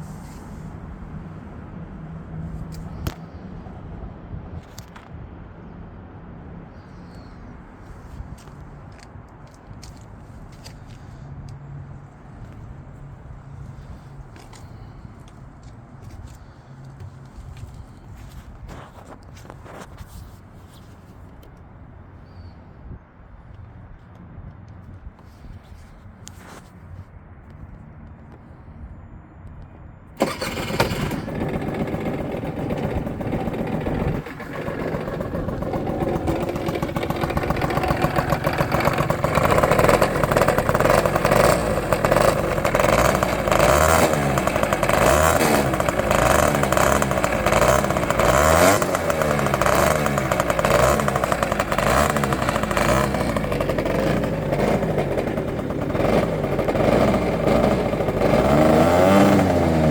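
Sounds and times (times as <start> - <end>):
scooter engine revving: 30.2 - 59.9.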